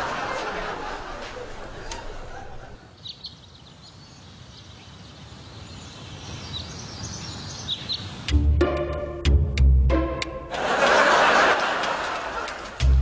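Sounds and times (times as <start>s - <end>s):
music with heavy bass: 12.8s - 13.0s.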